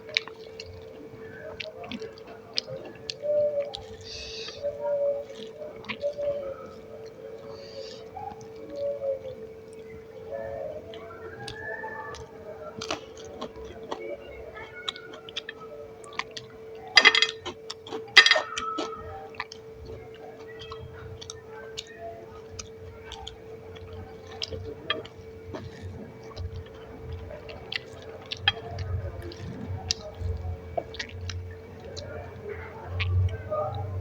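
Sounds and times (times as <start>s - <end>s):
faint steady hum: 0.0s - 34.0s
wet chewing and smacking: 0.0s - 34.0s
crunchy bites: 10.9s - 32.2s.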